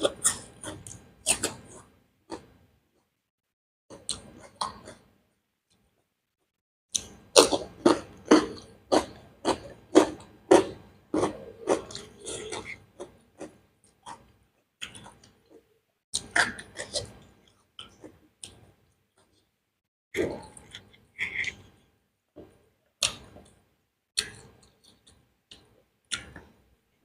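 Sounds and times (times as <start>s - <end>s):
chewing with wet mouth smacks: 7.0s - 15.6s.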